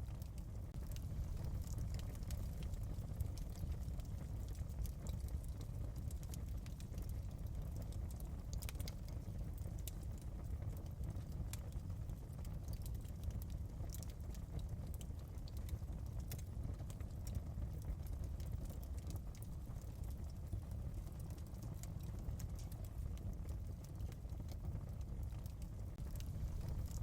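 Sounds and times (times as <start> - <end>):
fire crackling in fireplace: 0.0 - 27.0.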